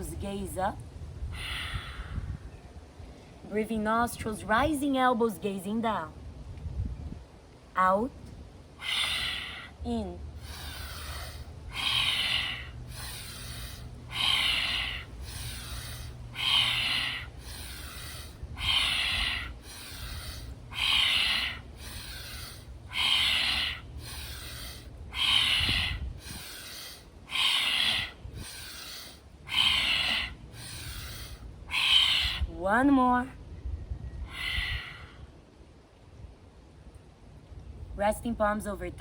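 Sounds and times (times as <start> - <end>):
woman breathing forcefully through nose: 1.2 - 2.6, 8.7 - 32.5, 34.2 - 35.3.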